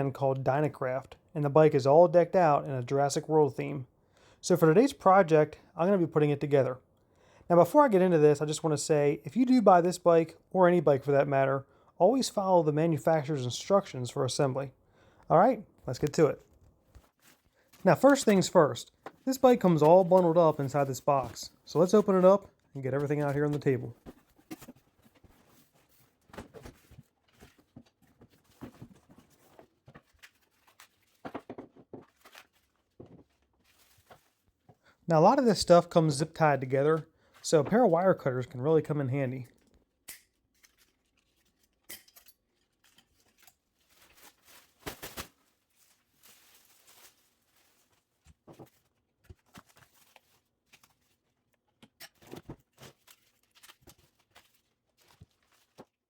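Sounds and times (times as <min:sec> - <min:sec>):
rustling packaging: 0:15.9 - 0:34.7, 0:40.5 - 0:41.9, 0:42.5 - 0:51.6, 0:52.2 - 0:56.0.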